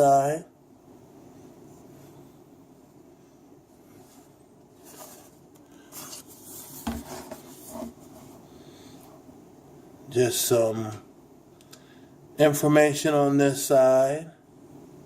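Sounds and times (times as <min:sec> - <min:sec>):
faint room hum: 0:00.0 - 0:15.0
tablet rubbing and scraping: 0:04.8 - 0:08.4.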